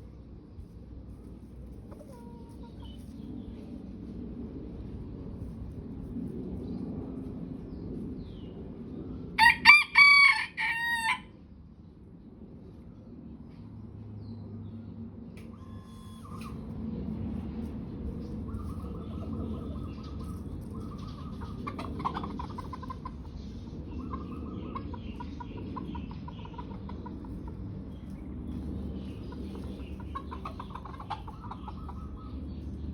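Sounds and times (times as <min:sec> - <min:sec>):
chickens clucking rapidly: 0:00.6 - 0:03.8, 0:15.4 - 0:32.9
chickens crowing: 0:01.7 - 0:03.1, 0:09.4 - 0:11.4, 0:15.4 - 0:16.7, 0:18.5 - 0:32.7.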